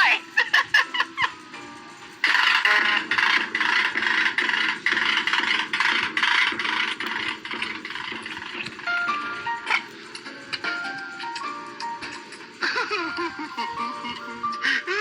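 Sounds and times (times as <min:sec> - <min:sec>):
rattling scraping clatter: 0:02.1 - 0:12.6.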